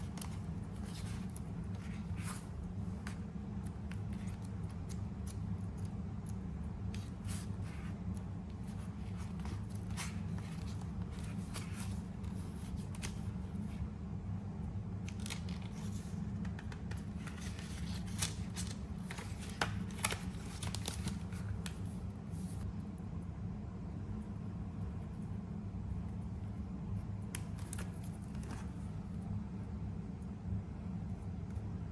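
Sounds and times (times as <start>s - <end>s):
scissors snipping paper: 0.0s - 13.4s, 15.1s - 21.9s
paper handling: 0.0s - 13.8s, 15.1s - 22.6s, 27.3s - 28.9s
steady low hum: 0.0s - 31.9s.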